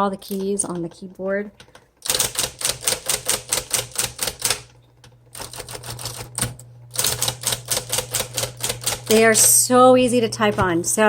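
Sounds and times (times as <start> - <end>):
steady low hum: 0.0 - 11.0
typewriter key strikes: 2.0 - 4.7.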